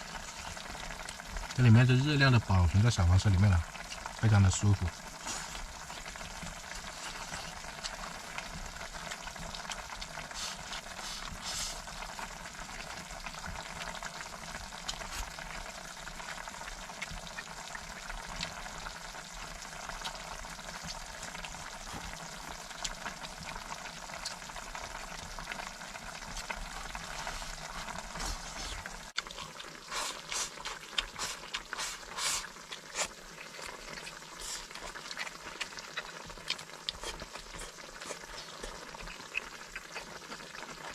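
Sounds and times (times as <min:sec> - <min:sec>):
stew bubbling and sizzling: 0:00.0 - 0:40.9.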